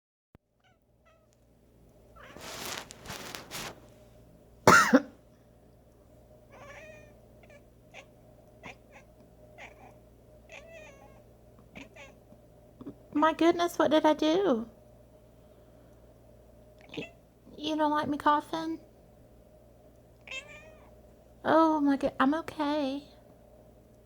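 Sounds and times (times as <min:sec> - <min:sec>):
cat meowing: 0:02.2 - 0:02.9, 0:06.5 - 0:12.2, 0:16.8 - 0:17.2, 0:20.2 - 0:20.9
person coughing: 0:04.7 - 0:05.2.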